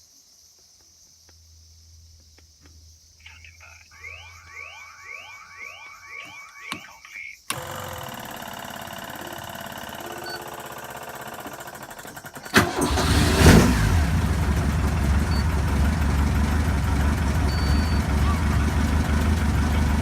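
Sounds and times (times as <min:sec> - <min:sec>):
car engine starting and idling: 0:07.5 - 0:20.0.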